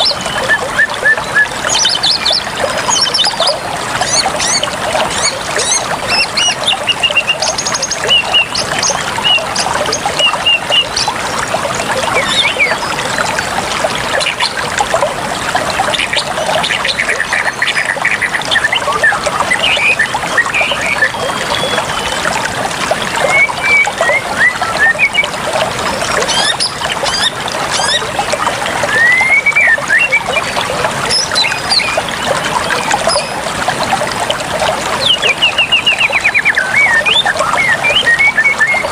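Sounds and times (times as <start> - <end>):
running water: 0.0 - 38.9
birds chirping and whistling: 12.2 - 12.9, 16.9 - 22.2, 23.2 - 25.3, 28.9 - 30.4, 35.0 - 38.9.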